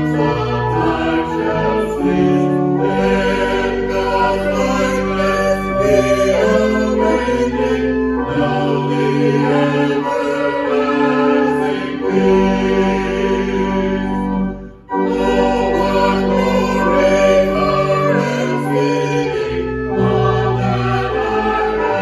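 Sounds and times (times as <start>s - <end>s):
choir singing held chords: 0.0s - 22.0s
musical accompaniment: 0.0s - 22.0s.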